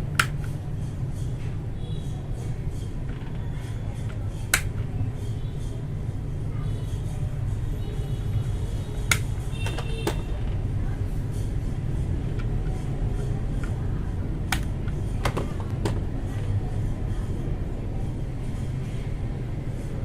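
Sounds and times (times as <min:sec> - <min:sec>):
keyboard switches clicking into place: 0:00.1 - 0:00.6, 0:04.5 - 0:04.8, 0:09.1 - 0:10.2.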